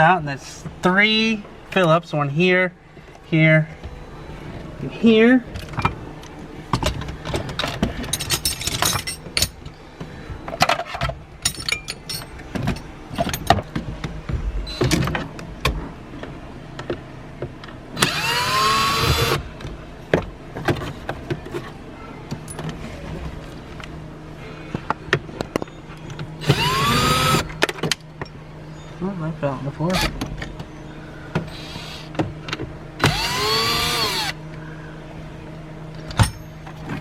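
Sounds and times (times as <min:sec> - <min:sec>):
hand tools clicking and knocking: 0:10.6 - 0:13.6
small electric motor whirring: 0:18.0 - 0:19.4, 0:26.4 - 0:27.6, 0:31.5 - 0:32.1, 0:33.0 - 0:34.4.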